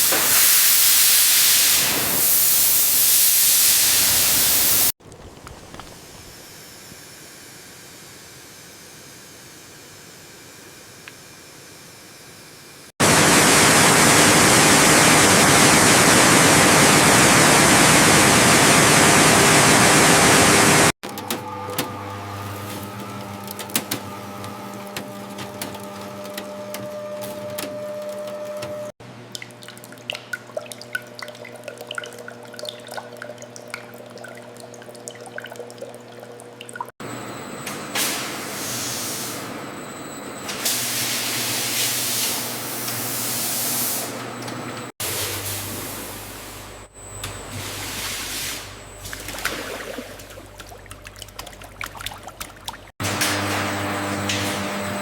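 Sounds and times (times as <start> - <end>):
hissing spray: 0.0 - 4.9
rushing water spray: 0.0 - 6.4, 13.0 - 20.9
machinery humming: 3.9 - 29.0
clicks and clatter: 21.0 - 28.9.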